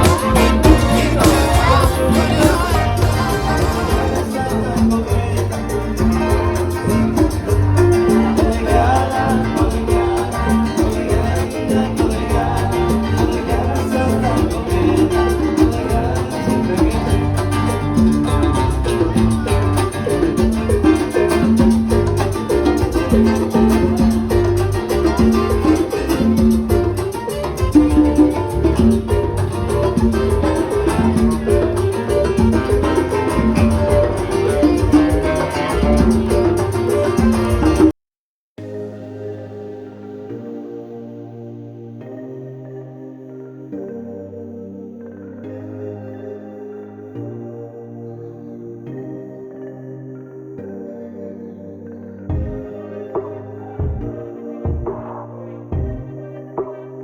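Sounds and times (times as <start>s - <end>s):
upbeat latin-style music: 0.0s - 38.0s, 44.9s - 57.0s.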